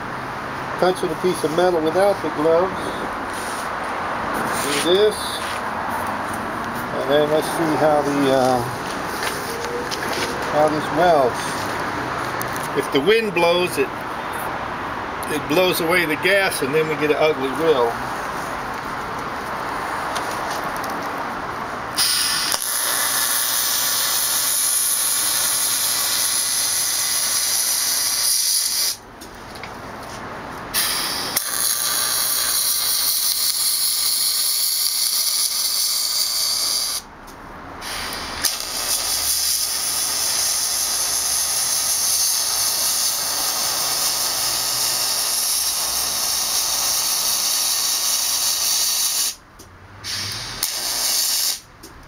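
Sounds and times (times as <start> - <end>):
welding arc hissing: 4.4 - 5.6, 21.9 - 29.0, 30.7 - 37.1, 37.8 - 49.4, 50.0 - 51.7.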